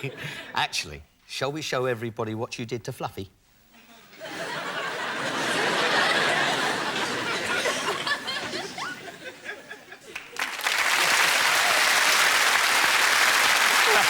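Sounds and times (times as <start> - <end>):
audience laughing: 4.1 - 12.1
audience applause: 10.1 - 14.0.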